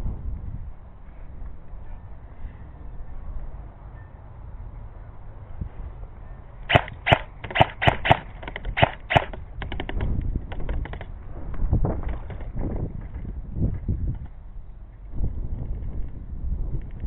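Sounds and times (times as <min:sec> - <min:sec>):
wind rumble on microphone: 0:00.0 - 0:17.0
airsoft gun shots: 0:06.7 - 0:09.8.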